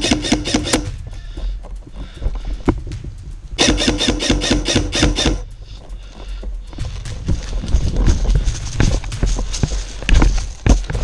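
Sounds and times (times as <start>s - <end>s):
airsoft gun rapid firing: 0.0s - 1.0s, 3.6s - 5.5s
sharp click: 0.0s - 1.0s, 3.6s - 5.5s.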